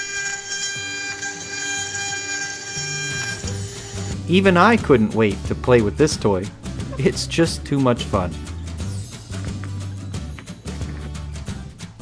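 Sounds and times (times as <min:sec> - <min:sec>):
router spindle whine: 0:00.0 - 0:04.8
low motor tone: 0:00.8 - 0:04.3.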